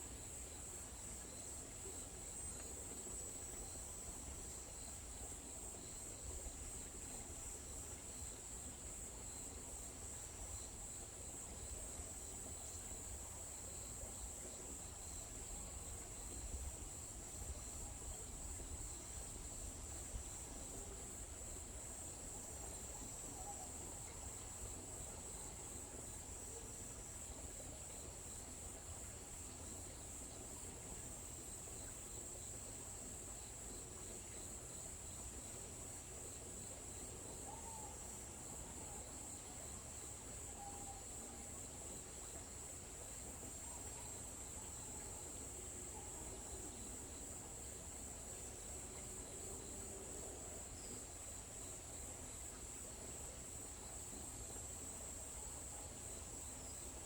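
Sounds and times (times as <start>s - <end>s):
insect chorus trilling: 36.6s - 51.7s.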